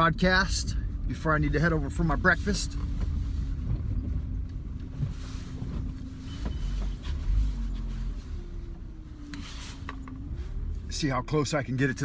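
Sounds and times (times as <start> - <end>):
car engine and road rumble: 0.0 - 12.0.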